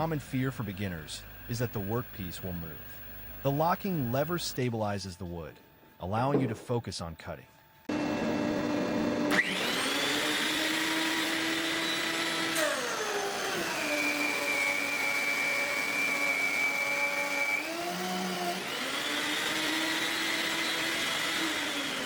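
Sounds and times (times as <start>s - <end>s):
thickness planer motor whine: 7.9s - 22.0s.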